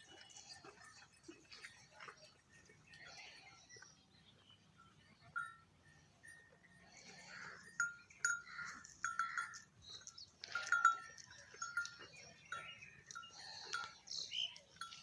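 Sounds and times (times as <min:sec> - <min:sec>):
short ringing clinks: 0:05.4 - 0:15.0.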